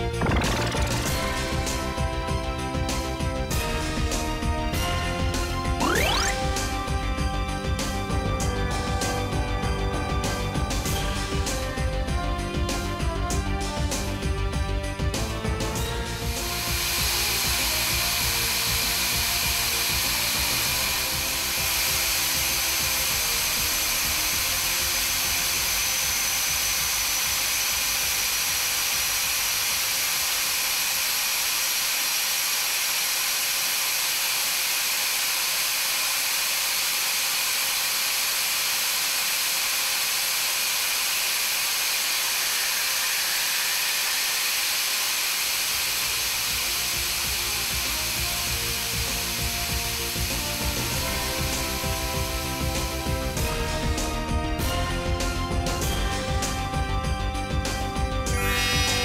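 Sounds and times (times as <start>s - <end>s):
background music: 0.0s - 29.2s, 46.2s - 59.0s
machine tool drill hissing: 0.0s - 56.8s, 57.6s - 59.0s.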